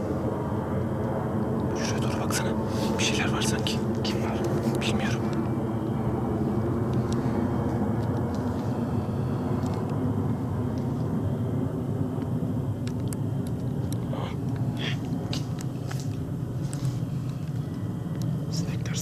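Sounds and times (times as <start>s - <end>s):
low engine rumble: 0.0s - 19.0s
faint clicks and rustles: 12.8s - 18.4s.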